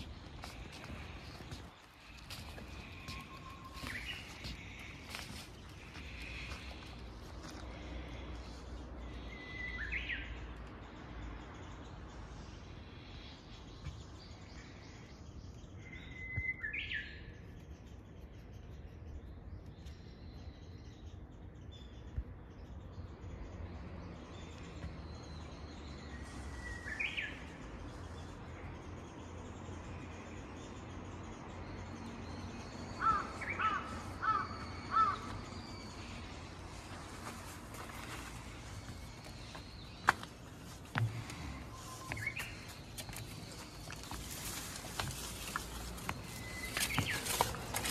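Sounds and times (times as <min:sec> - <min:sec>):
bush warbler singing: 0:00.0 - 0:47.9
faint outdoor background noise: 0:00.0 - 0:47.9
crow cawing: 0:33.0 - 0:35.3.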